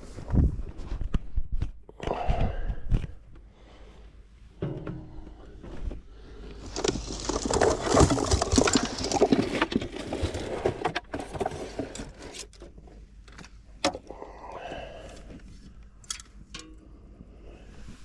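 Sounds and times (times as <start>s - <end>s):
gear clattering and scraping: 6.6s - 12.7s.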